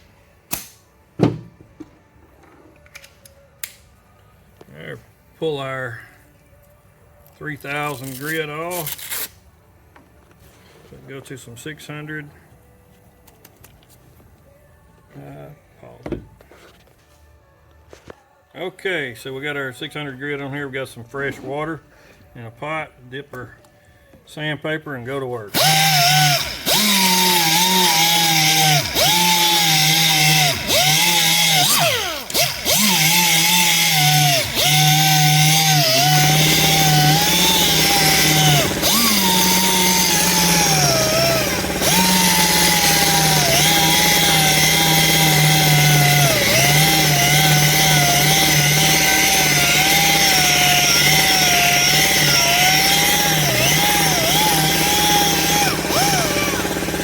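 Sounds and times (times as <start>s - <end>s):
sander whining on metal wheel: 25.5s - 57.0s.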